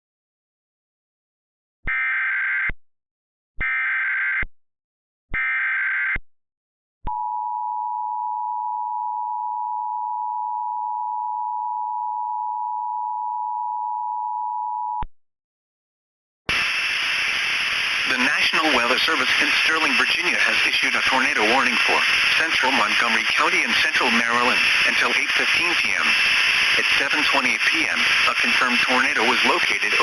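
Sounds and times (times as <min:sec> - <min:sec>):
hissy radio feed: 0:16.5 - 0:30.0
digital header data bursts: 0:16.6 - 0:30.0.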